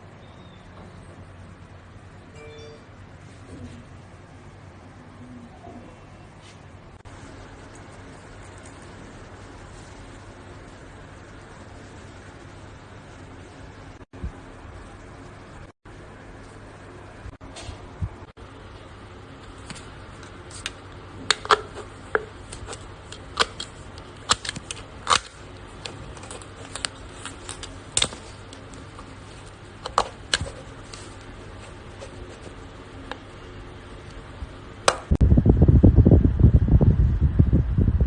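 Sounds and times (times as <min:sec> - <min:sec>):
steady low hum: 0:00.0 - 0:38.0
loud low rumbling: 0:35.2 - 0:38.0.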